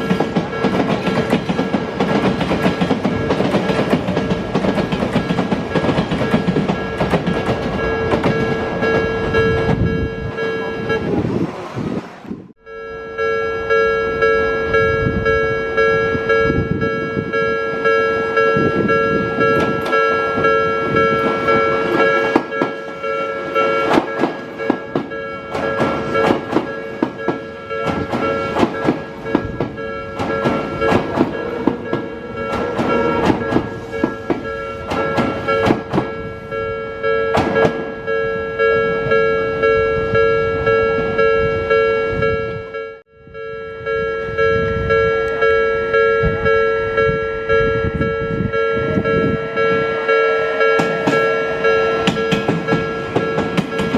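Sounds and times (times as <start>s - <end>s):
train wheels clacking: 0.0s - 12.0s, 17.8s - 36.3s, 37.2s - 38.1s, 50.0s - 53.9s
level crossing bell ringing: 5.2s - 11.1s, 12.6s - 53.9s.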